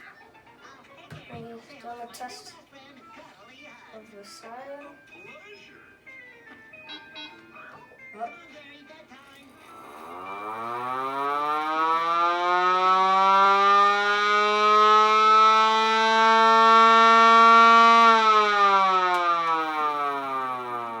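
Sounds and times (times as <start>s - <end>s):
fire siren wailing: 9.6s - 21.0s.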